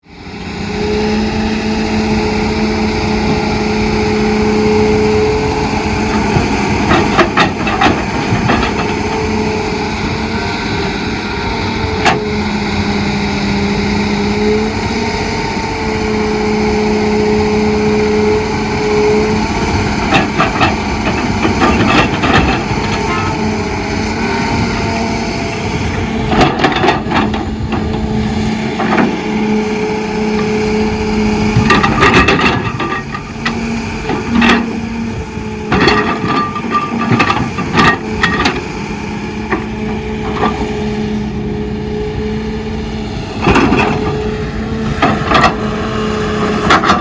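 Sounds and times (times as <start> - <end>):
excavator diesel engine droning: 0.0 - 47.0
metal clanking and knocks: 6.1 - 9.6, 19.7 - 23.6, 24.7 - 29.3, 30.4 - 35.0, 35.6 - 38.8, 43.4 - 45.8, 46.4 - 47.0.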